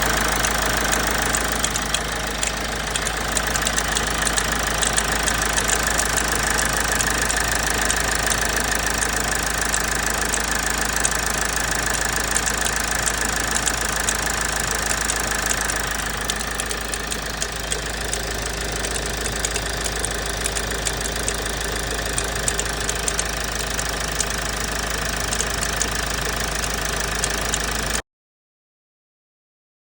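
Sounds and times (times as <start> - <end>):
diesel engine clattering rattle: 0.0 - 28.0.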